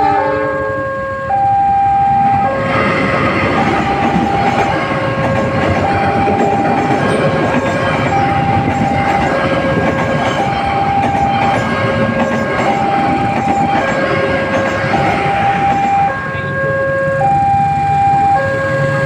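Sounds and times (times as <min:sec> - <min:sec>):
level-crossing two-tone siren: 0:00.0 - 0:19.0
train wheels clattering on rails: 0:02.6 - 0:16.1.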